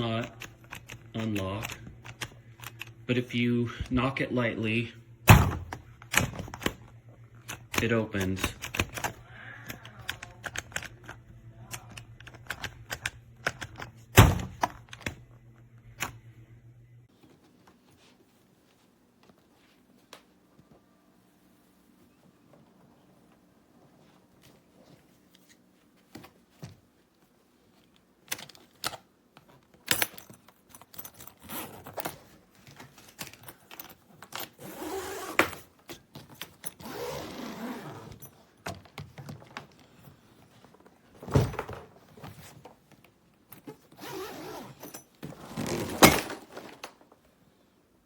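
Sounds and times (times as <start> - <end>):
suitcase handling clicks and knocks: 28.2 - 47.2
suitcase rasping: 43.6 - 46.9.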